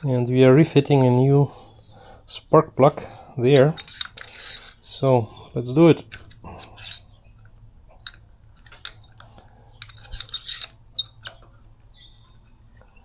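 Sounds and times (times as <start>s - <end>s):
metal hand tool clicking and scraping: 3.6s - 4.9s, 8.0s - 11.8s.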